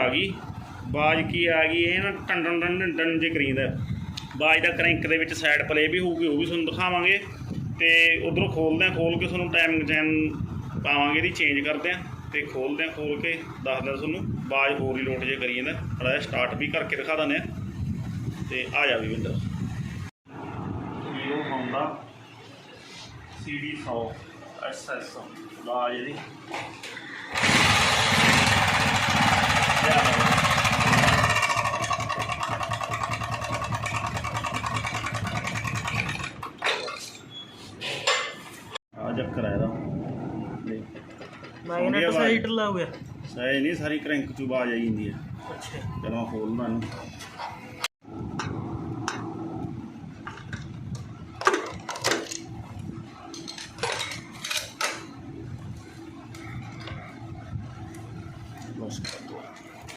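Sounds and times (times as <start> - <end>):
motorcycle engine running: 27.4 - 36.4.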